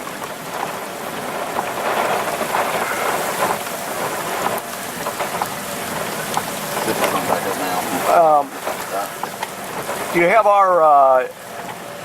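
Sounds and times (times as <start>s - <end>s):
steady rain falling: 0.0s - 12.0s.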